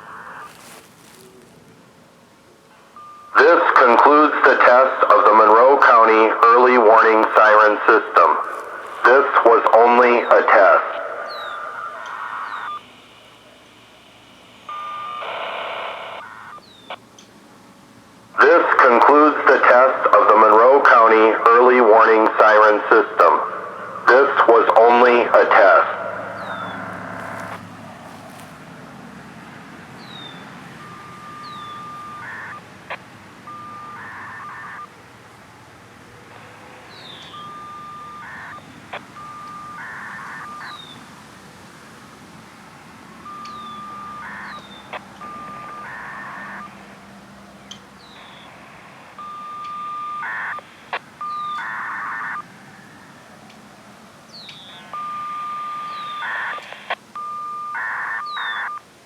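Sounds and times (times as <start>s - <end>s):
steady mid-pitched beep: 2.9s - 7.7s, 8.7s - 13.1s, 14.3s - 16.6s, 30.8s - 32.6s, 33.4s - 34.9s, 37.0s - 40.9s, 43.0s - 46.9s, 49.1s - 50.6s, 51.2s - 52.4s, 54.7s - 58.8s
higher tones with sharp clicks: 49.2s - 52.4s.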